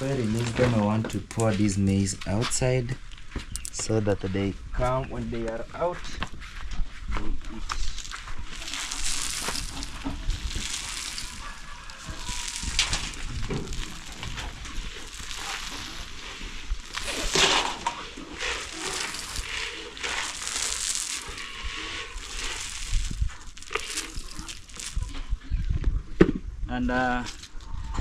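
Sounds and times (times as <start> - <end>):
grains poured on ground: 7.7 - 25.3.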